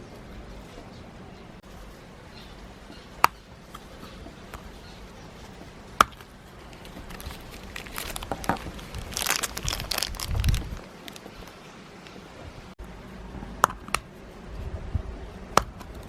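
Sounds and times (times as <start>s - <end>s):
plastic packaging crinkling: 6.1s - 12.2s.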